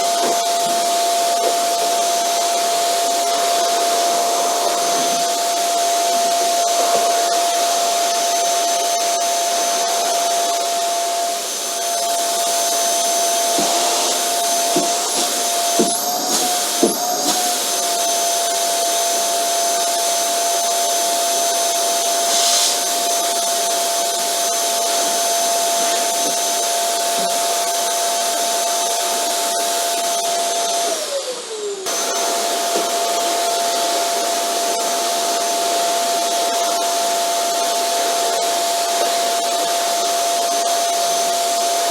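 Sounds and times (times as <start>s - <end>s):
vacuum cleaner motor whining: 0.0s - 41.9s.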